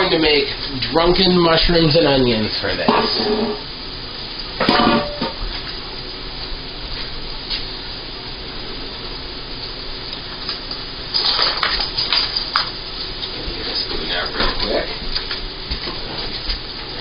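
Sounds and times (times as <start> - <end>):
onions sizzling in frying pan: 0.0 - 13.4.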